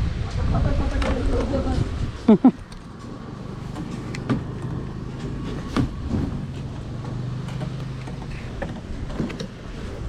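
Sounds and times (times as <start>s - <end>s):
low engine-like hum: 2.4s - 10.0s.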